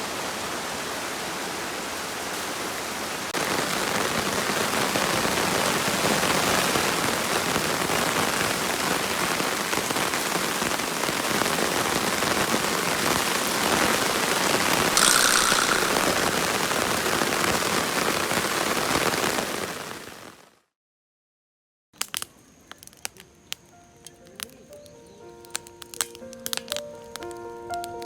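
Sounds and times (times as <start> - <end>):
heavy rain falling: 0.0 - 20.5.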